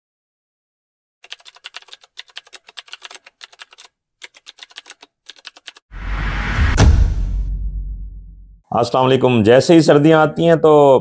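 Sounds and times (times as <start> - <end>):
rushing sound with low rumble: 6.0 - 8.6.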